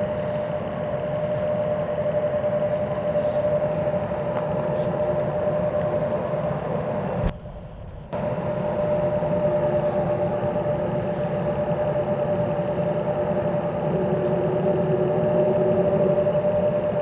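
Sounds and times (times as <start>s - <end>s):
engine rumble with whine: 0.0s - 17.0s.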